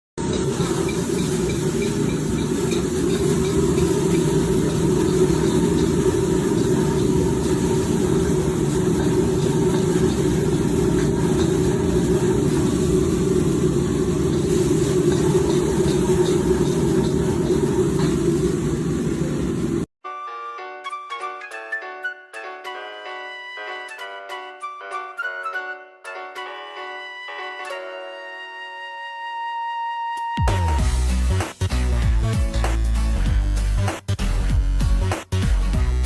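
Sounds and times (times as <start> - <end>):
burner hiss: 0.2 - 19.9
gas burner roaring: 0.2 - 19.9.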